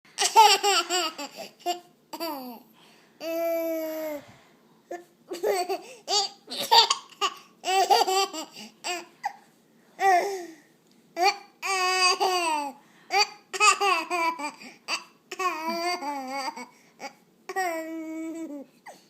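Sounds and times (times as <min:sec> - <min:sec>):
baby laughing: 0:00.2 - 0:02.6, 0:05.3 - 0:09.4, 0:11.2 - 0:18.3.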